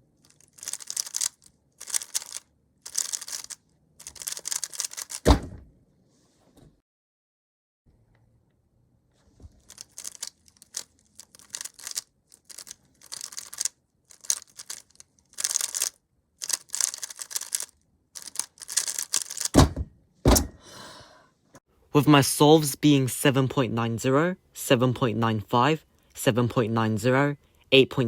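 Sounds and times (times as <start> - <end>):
puzzle cube clacking: 0.3 - 5.2, 9.6 - 19.6.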